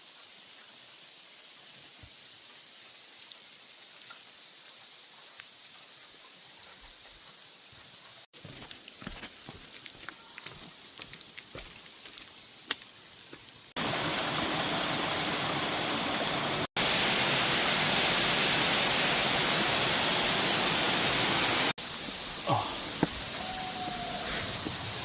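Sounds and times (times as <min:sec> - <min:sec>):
waterfall rushing: 0:13.8 - 0:25.0.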